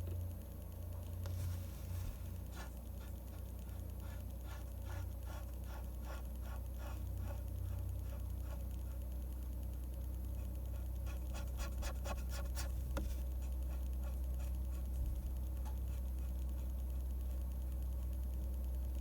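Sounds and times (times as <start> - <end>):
faint low hum: 0.0 - 19.0
pen scratching on paper: 1.9 - 9.0, 10.4 - 15.2.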